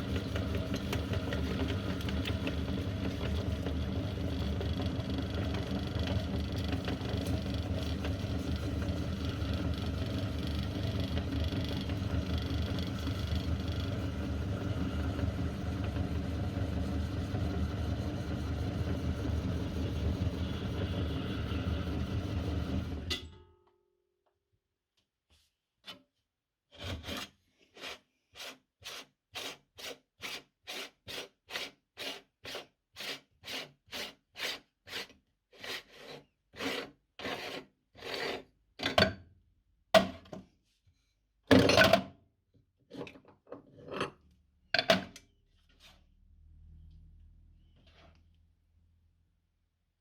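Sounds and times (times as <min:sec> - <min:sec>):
motor running: 0:00.0 - 0:23.1.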